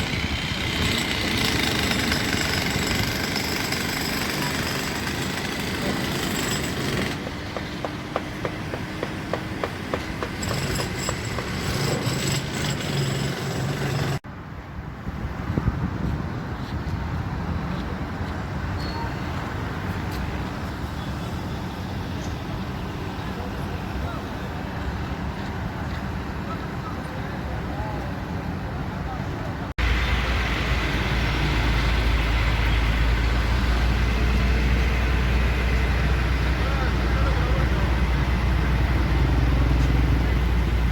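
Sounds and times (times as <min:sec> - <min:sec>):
construction site noise: 0:00.0 - 0:40.9
heavy engine droning: 0:29.8 - 0:40.9.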